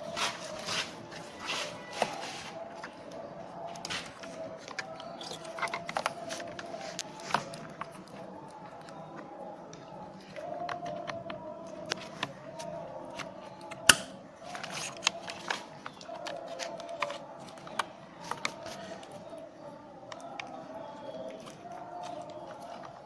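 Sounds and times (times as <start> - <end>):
plastic and metal parts clicking: 3.7 - 9.0, 9.8 - 19.2.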